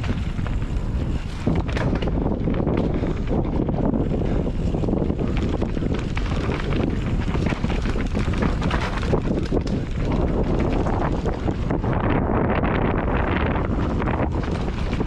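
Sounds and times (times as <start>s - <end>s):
bike rattling and knocking: 0.0s - 15.0s
wind rushing over microphone: 0.0s - 15.0s.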